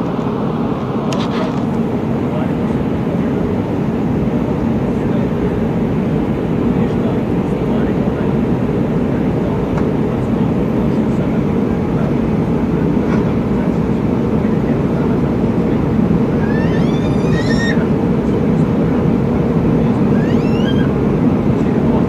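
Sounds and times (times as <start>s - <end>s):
airplane cabin engine roar: 0.0s - 22.0s
high-pitched rising sound: 20.1s - 20.9s.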